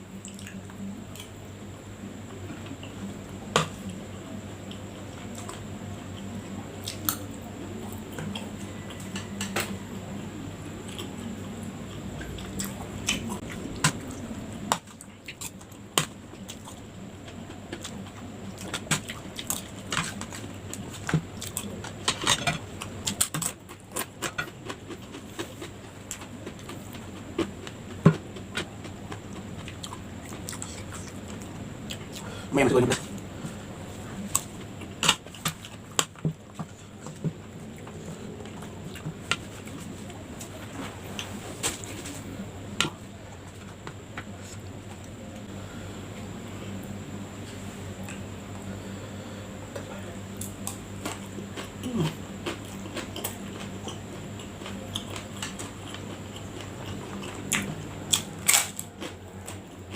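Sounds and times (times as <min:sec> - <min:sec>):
person chewing food: 0:10.8 - 0:42.2, 0:50.3 - 0:59.9.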